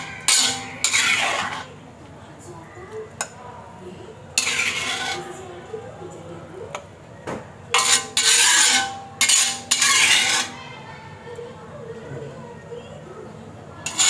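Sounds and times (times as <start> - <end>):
spatula clinking on pan: 0.0 - 1.7, 4.4 - 5.2, 7.7 - 10.6
spatula scraping food in pan: 0.0 - 1.8, 4.4 - 5.4, 7.7 - 10.8.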